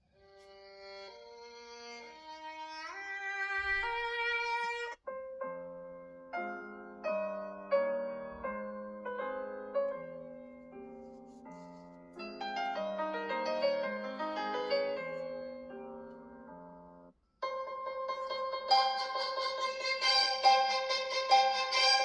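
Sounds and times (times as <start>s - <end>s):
sustained string-like notes: 18.2s - 22.0s.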